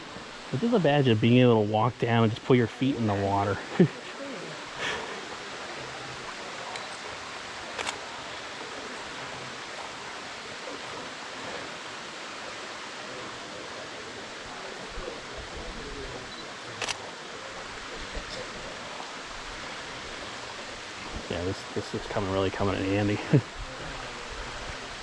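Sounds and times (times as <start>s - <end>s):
flowing stream water: 0.0s - 25.0s
short clicks: 7.8s - 8.0s.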